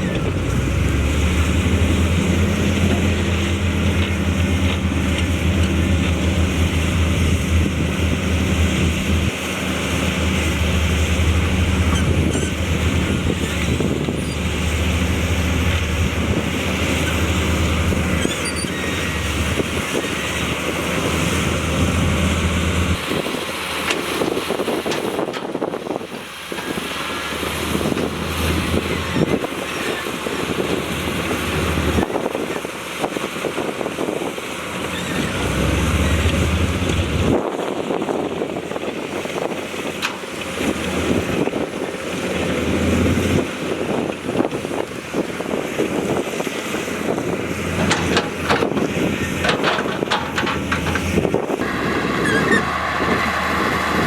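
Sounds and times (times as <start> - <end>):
heavy diesel engines droning: 0.0 - 54.0
metallic clanks: 47.8 - 51.6.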